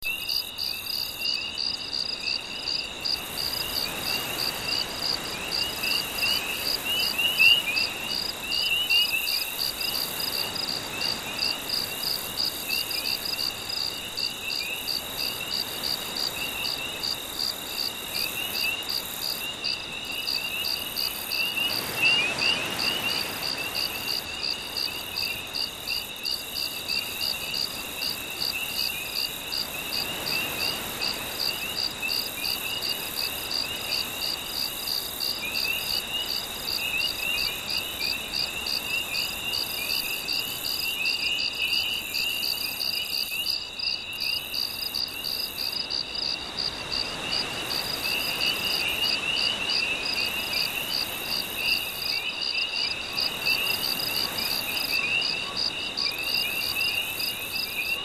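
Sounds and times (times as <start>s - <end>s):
crickets chirping: 0.0s - 58.0s
insect drone: 0.0s - 58.0s.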